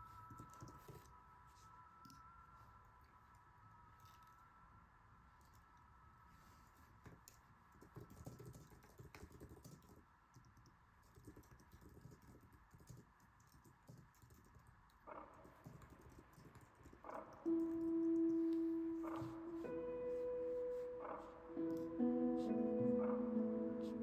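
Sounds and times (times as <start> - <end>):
keyboard typing: 0.1 - 1.2, 7.0 - 24.0.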